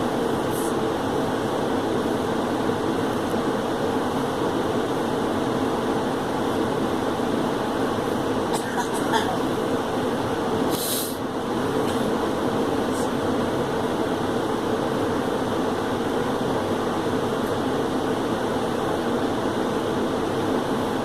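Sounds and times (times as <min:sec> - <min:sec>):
steady background noise: 0:00.0 - 0:21.0
short hiss: 0:10.7 - 0:11.2.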